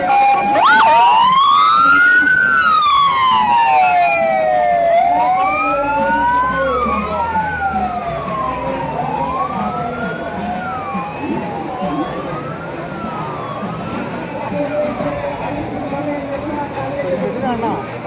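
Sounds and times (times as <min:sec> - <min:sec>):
emergency vehicle sirens wailing: 0:00.0 - 0:18.0.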